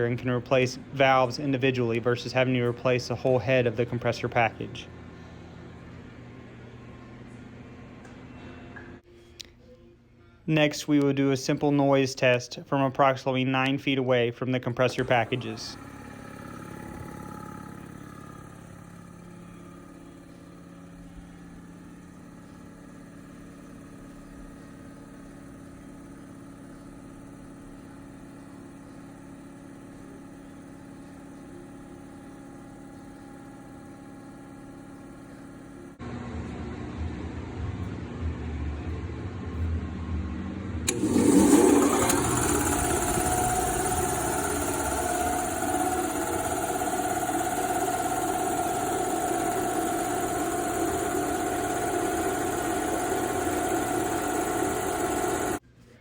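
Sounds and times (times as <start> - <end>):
air compressor humming: 0.0 - 9.5, 12.7 - 39.7, 40.8 - 55.6
deep running compressor: 0.0 - 9.6, 12.7 - 56.0
compressor clatter: 14.8 - 36.0, 40.8 - 55.6.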